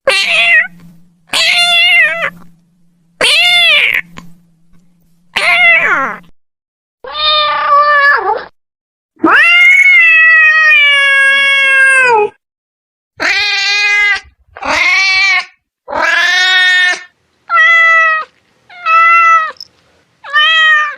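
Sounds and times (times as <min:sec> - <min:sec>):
cat meowing: 0:00.0 - 0:02.4, 0:03.2 - 0:04.1, 0:05.3 - 0:06.2, 0:07.0 - 0:08.5, 0:13.2 - 0:19.6, 0:20.2 - 0:20.9.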